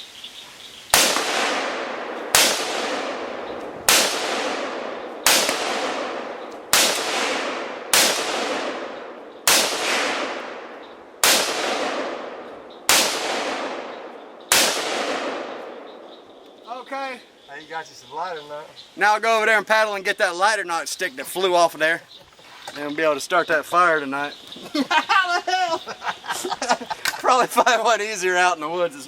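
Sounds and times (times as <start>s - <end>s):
gunshots with rolling echo: 0.9s - 16.9s.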